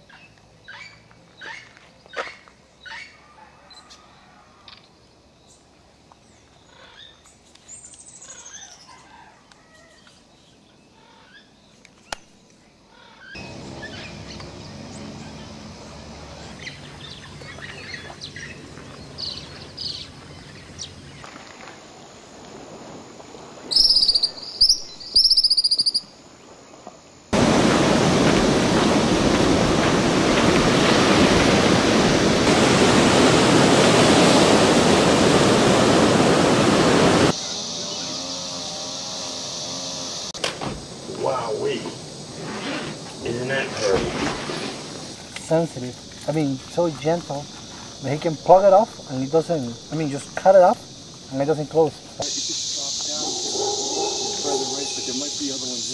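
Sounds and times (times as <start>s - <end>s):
loud high bird calls: 0.1s - 4.1s, 12.9s - 21.3s, 23.7s - 26.1s, 37.3s - 40.4s, 52.3s - 55.8s
bird chirps: 13.0s - 21.3s, 23.7s - 26.1s
loud rushing noise: 27.4s - 40.4s.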